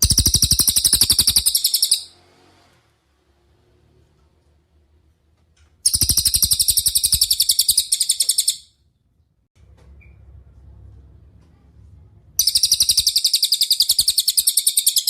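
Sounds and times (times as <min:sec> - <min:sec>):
bird trilling: 0:00.0 - 0:02.1, 0:05.9 - 0:08.7, 0:12.4 - 0:15.0.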